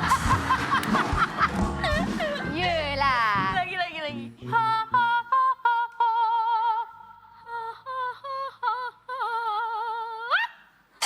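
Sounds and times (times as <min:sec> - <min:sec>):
woman singing vocal warm-up: 0:02.0 - 0:10.3.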